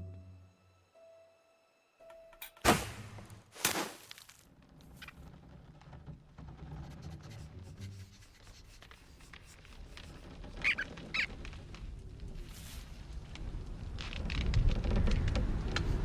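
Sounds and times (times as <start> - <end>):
cartoon animal squeaks: 10.6 - 11.3.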